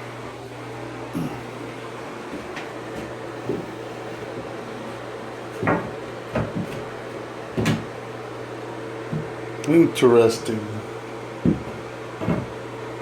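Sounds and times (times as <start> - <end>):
steady low hum: 0.0 - 13.0
cupboard or drawer knocks: 5.6 - 6.7, 11.4 - 12.5.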